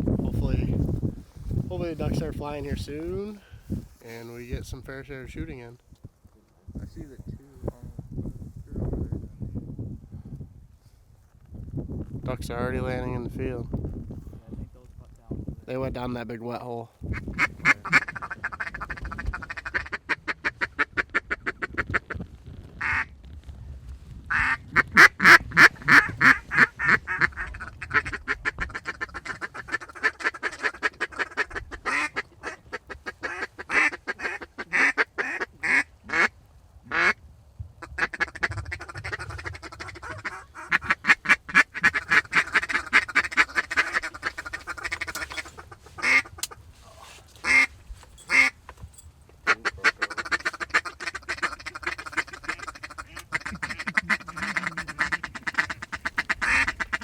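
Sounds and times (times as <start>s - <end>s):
ducks quacking: 17.1s - 22.2s, 22.8s - 23.1s, 24.3s - 36.3s, 36.9s - 37.2s, 37.8s - 46.7s, 47.4s - 48.6s, 49.4s - 57.0s.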